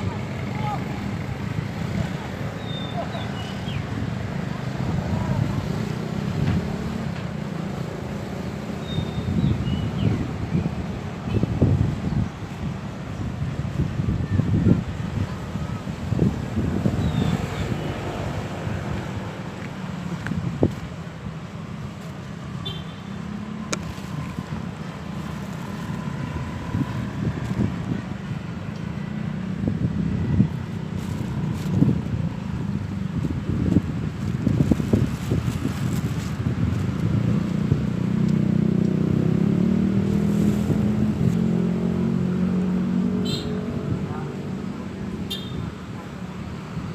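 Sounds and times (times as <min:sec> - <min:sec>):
wind buffeting microphone: 0:08.8 - 0:22.6, 0:23.7 - 0:43.0
vehicle engine humming: 0:16.0 - 0:46.9
rough rustling: 0:23.6 - 0:27.9, 0:30.5 - 0:32.3, 0:33.6 - 0:37.6, 0:40.0 - 0:41.6.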